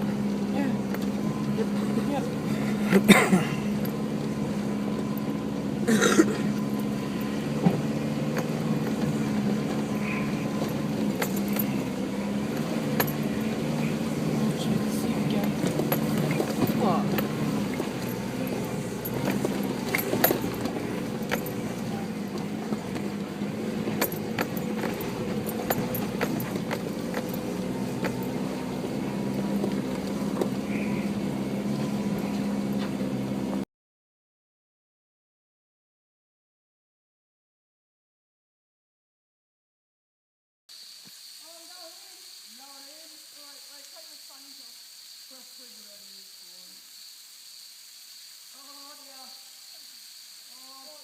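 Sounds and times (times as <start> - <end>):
car engine running: 0.0 - 33.6
sharp clicks and rattles: 6.5 - 30.6.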